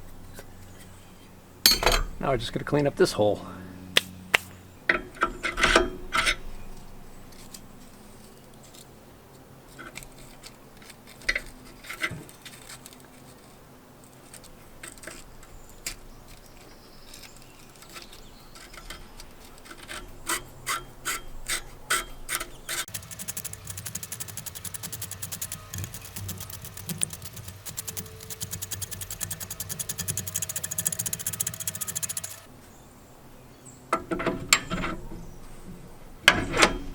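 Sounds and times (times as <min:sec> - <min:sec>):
clicks: 0:22.9 - 0:32.5.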